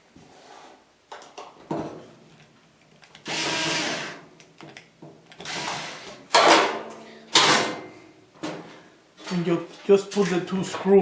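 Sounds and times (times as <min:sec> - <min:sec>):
cordless drill driving screws: 0:03.2 - 0:04.2, 0:05.4 - 0:06.2.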